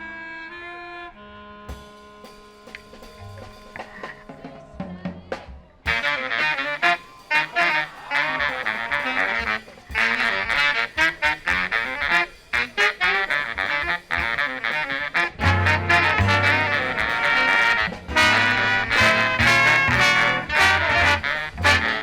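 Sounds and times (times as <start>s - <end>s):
brass chords: 0.0s - 4.5s, 5.9s - 22.0s
marching band playing swing: 0.6s - 22.0s
drum hits: 15.4s - 22.0s.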